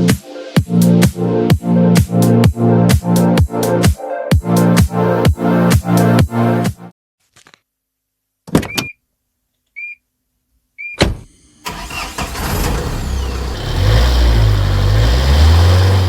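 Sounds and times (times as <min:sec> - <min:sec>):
car engine starting and revving: 0:11.3 - 0:16.0.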